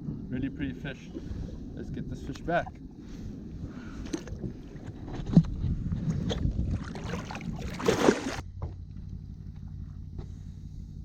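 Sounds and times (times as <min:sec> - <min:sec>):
wind rumble on microphone: 0:00.0 - 0:11.0
water sloshing around kayak: 0:00.9 - 0:09.0.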